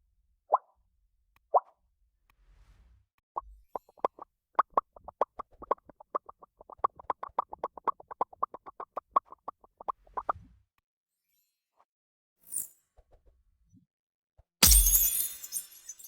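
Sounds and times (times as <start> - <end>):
short pitched plopping pops: 3.8 - 10.3.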